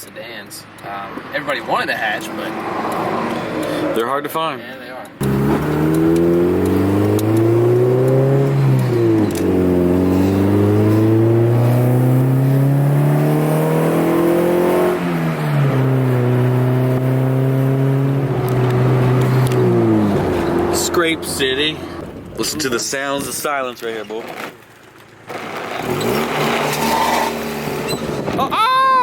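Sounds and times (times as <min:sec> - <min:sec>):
car engine accelerating: 0:05.2 - 0:22.7, 0:25.3 - 0:28.4.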